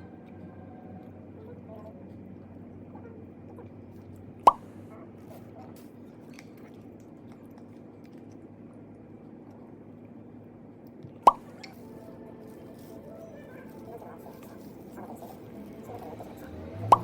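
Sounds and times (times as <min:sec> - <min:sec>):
person chewing rice cake: 0:00.0 - 0:10.2.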